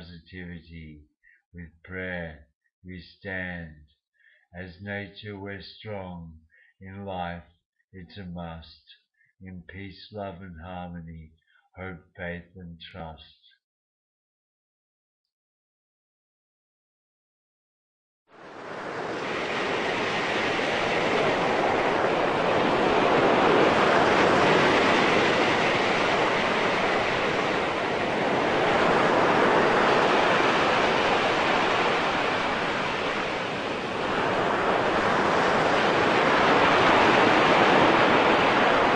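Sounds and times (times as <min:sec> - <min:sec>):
ocean surf: 0:18.4 - 0:38.9.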